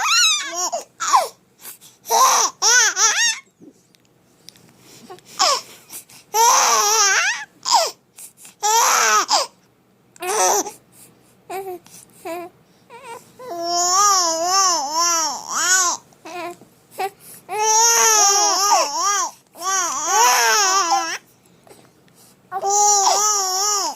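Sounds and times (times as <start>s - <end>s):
babies crying: 0.0s - 1.3s, 2.1s - 3.4s, 17.6s - 21.2s, 22.6s - 23.9s.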